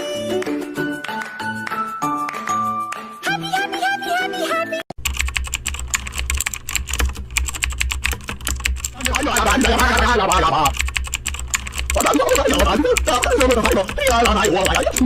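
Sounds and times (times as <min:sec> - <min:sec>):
typing on computer keyboard: 0:05.0 - 0:15.0.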